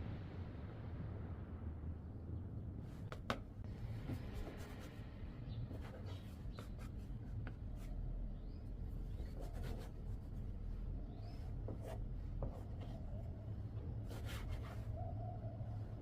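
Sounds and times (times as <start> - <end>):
low steady hum: 0.0 - 16.0
dough rubbing and scraping: 4.2 - 15.2.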